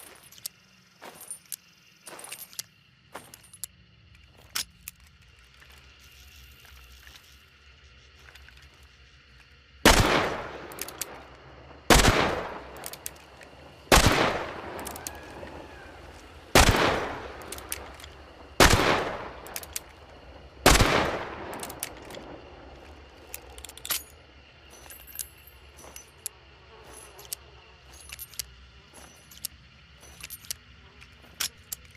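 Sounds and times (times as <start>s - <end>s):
light metallic clicks: 12.7s - 13.6s, 21.4s - 31.9s.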